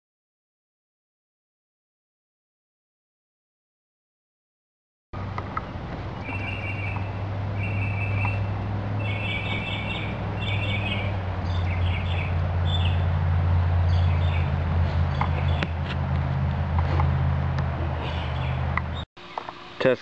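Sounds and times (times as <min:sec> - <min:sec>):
birds chirping: 0:05.2 - 0:20.0
steady low hum: 0:05.2 - 0:20.0.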